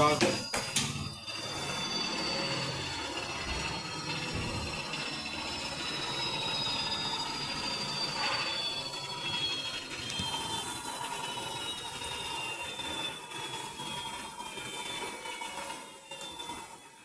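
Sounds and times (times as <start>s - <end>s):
washing machine motor whine: 0.0s - 17.0s.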